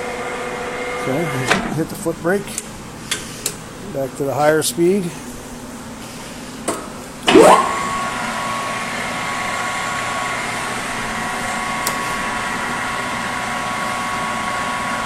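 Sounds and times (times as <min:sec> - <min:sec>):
lathe running with gear whine: 0:00.0 - 0:02.9, 0:07.3 - 0:15.0.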